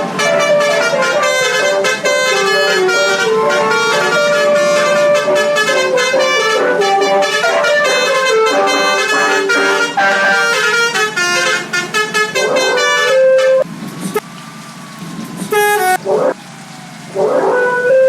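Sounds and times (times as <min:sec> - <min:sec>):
bus musical horn tune: 0:00.0 - 0:13.7, 0:15.5 - 0:16.0, 0:17.4 - 0:18.0
horn blast: 0:00.0 - 0:13.7.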